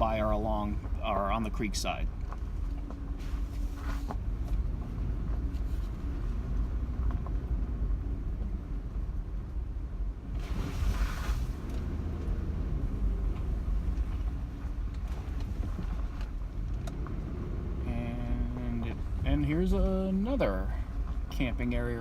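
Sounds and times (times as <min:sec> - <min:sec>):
vehicle rumbling on dirt road: 0:00.0 - 0:22.0
brief hiss: 0:10.4 - 0:11.6.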